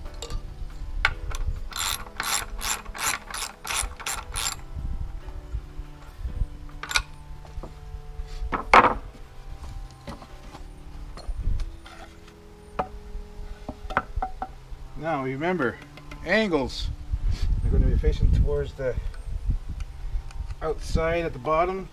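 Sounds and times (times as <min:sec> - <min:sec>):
ratchet wrench ratcheting: 0:01.7 - 0:04.6.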